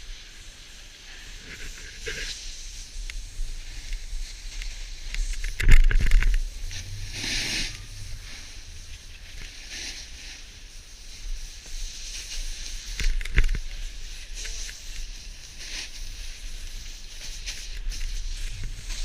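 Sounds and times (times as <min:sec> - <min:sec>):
snowboard scraping over snow: 0:00.1 - 0:19.0
low rumble: 0:05.9 - 0:10.7.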